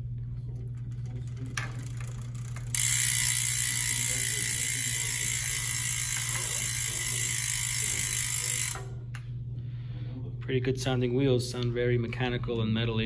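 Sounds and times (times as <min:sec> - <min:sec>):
bicycle freehub ratchet clicking: 0:00.7 - 0:09.0.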